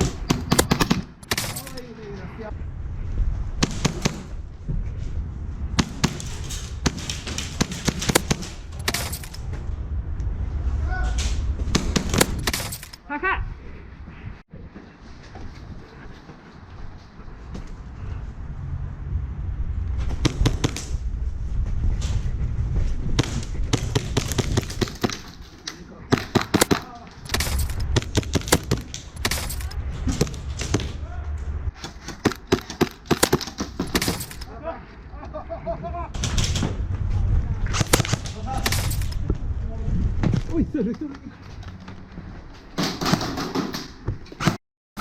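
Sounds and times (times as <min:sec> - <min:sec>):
airsoft guns firing: 0:00.0 - 0:01.7, 0:05.8 - 0:09.3, 0:26.1 - 0:31.0
low rumble: 0:01.6 - 0:14.7, 0:15.6 - 0:25.0, 0:26.6 - 0:31.8, 0:33.7 - 0:42.6.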